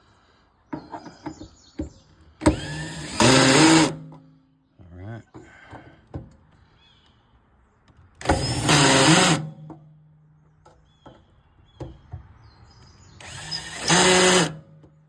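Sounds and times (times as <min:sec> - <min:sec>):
cordless drill driving screws: 0:02.4 - 0:04.0, 0:08.2 - 0:09.5, 0:13.2 - 0:14.6.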